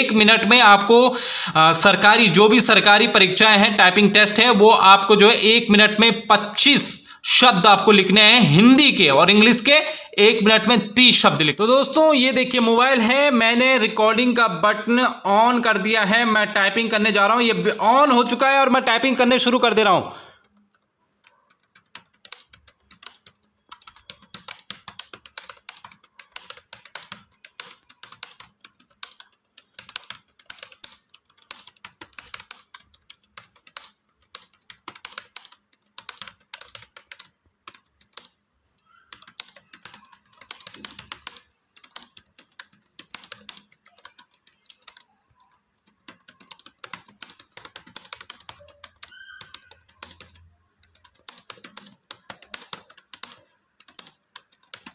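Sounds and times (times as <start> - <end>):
typing on laptop keyboard: 19.2 - 54.9.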